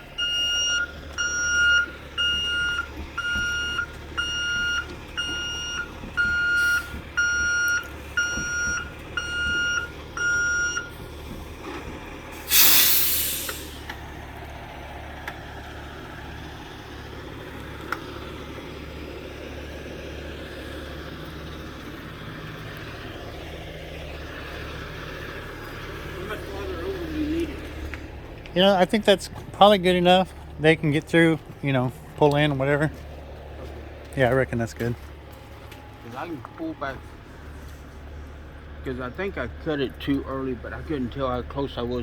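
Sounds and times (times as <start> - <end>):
truck reversing alarm beeping: 0.0 - 17.6
diesel engine idling: 0.0 - 42.0
air brake hiss: 6.6 - 6.9, 12.3 - 13.9.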